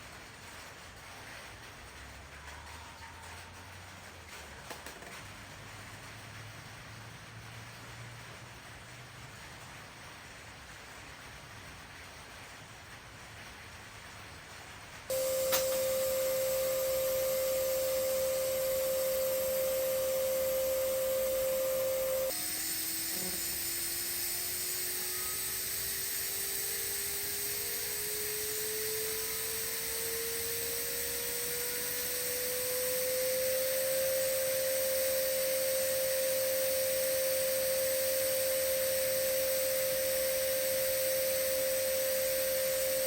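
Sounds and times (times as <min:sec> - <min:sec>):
welding arc whine and hiss: 0:15.1 - 0:43.0.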